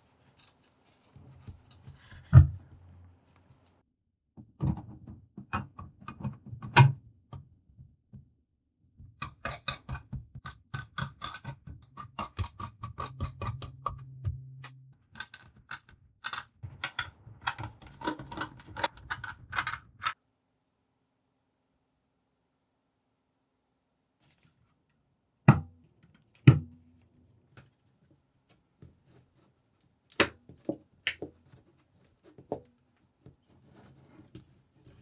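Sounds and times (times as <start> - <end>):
knocks of components: 9.2 - 20.2.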